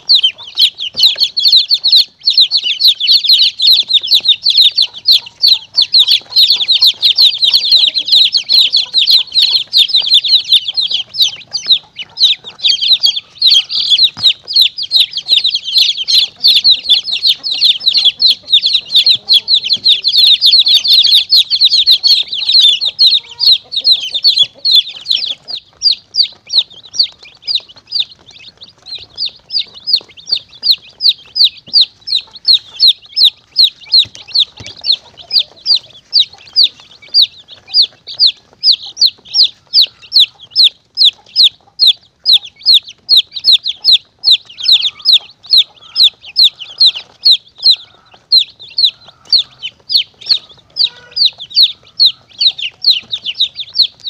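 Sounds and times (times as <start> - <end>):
chicks peeping in distress: 0.0 - 54.0.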